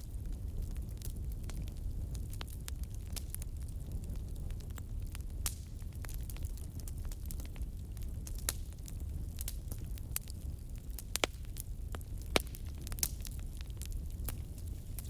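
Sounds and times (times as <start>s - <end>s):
low rumble of flames: 0.0s - 15.0s
wood fire crackling and popping: 0.0s - 15.0s.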